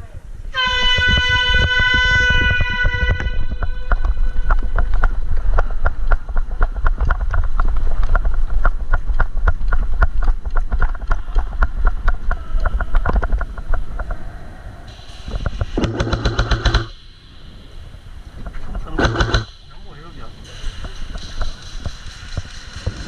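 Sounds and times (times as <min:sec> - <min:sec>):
low microphone rumble: 0:00.0 - 0:23.0
running footsteps: 0:00.7 - 0:14.2, 0:20.3 - 0:23.0
airsoft gun firing: 0:15.5 - 0:17.2, 0:18.9 - 0:19.7
gear rattling: 0:18.4 - 0:23.0.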